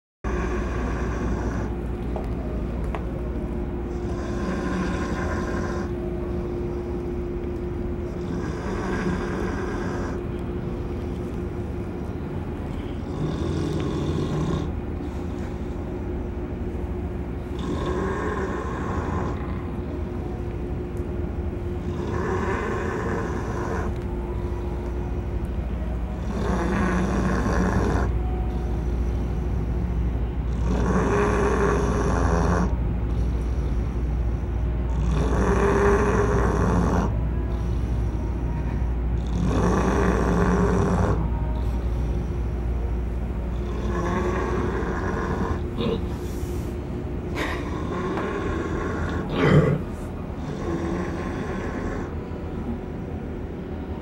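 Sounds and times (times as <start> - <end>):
steady low hum: 0.2 - 54.0
pig snoring: 0.3 - 1.8, 3.9 - 5.9, 8.0 - 10.2, 13.0 - 15.8, 17.5 - 20.0, 21.8 - 24.0, 26.2 - 29.8, 30.5 - 38.4, 39.2 - 42.5, 43.5 - 52.2.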